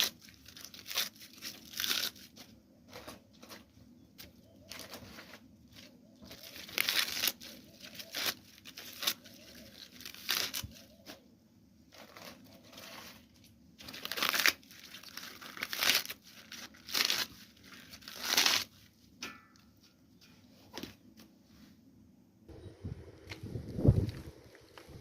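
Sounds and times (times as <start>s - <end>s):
rustling tearing noises: 0.0s - 11.2s, 11.9s - 19.1s.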